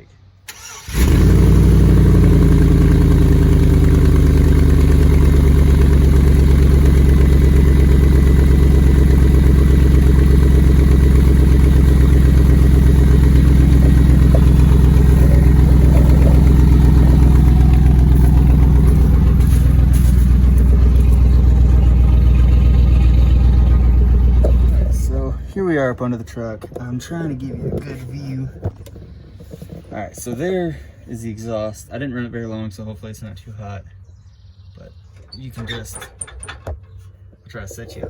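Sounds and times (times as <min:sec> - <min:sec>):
truck engine idling: 0:00.5 - 0:28.1
exhaust leak rapid pulsing: 0:00.6 - 0:25.5.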